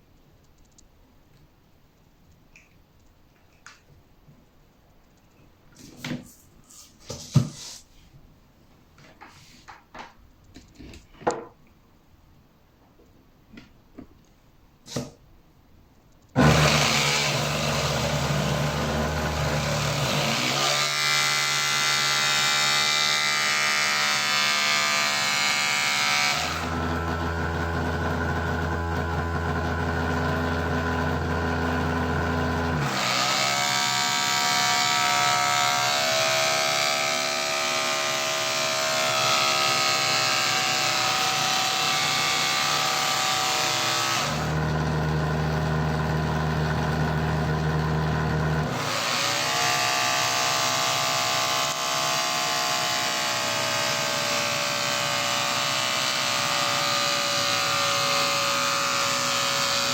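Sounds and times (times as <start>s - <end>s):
drain pump humming: 40.4s - 49.0s.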